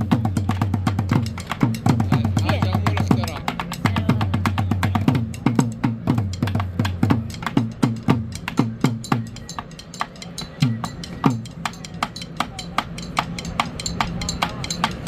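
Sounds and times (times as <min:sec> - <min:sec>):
sharp percussive clicks: 0:00.4 - 0:15.0.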